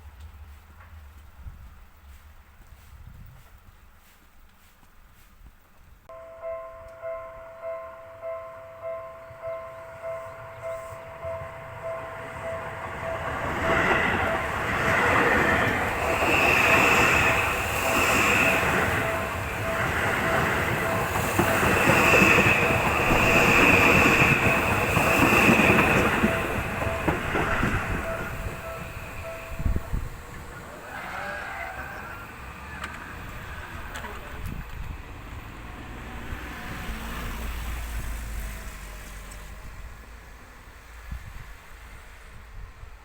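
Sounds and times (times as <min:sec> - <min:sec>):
level crossing bell ringing: 0:06.1 - 0:30.2
electric train passing: 0:06.1 - 0:43.0
high train whine: 0:06.1 - 0:43.0.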